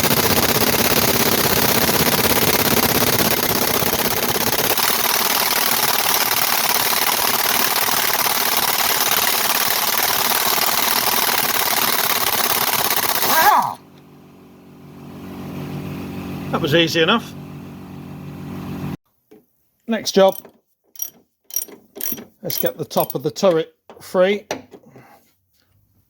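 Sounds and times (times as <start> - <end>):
impact wrench hammering: 0.0 - 13.3, 20.3 - 24.8.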